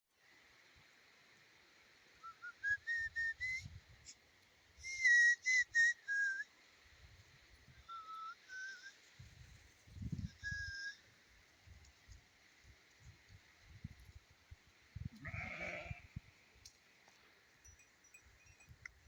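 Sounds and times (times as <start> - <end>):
person whistling a tune: 2.2 - 3.8, 4.8 - 6.5, 7.9 - 9.0, 10.2 - 11.0.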